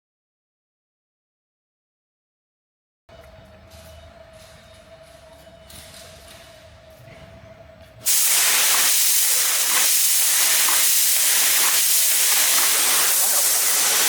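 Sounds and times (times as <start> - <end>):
loud hiss of air jet: 8.0 - 14.0.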